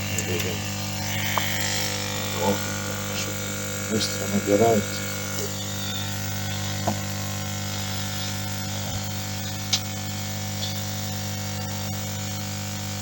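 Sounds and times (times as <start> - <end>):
air compressor buzzing hum: 0.0 - 13.0.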